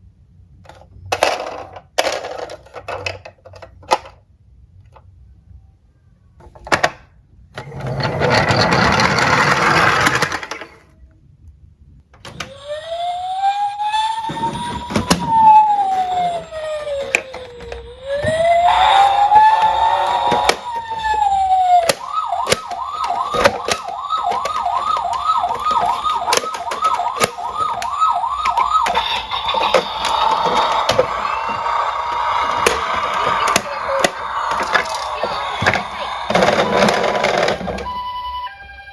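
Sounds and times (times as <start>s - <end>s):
toy cars rattling down a slope: 7.8s - 10.8s, 18.8s - 37.8s
toy cars clicking: 8.1s - 10.8s, 18.4s - 37.9s
emergency vehicle siren: 12.3s - 38.9s.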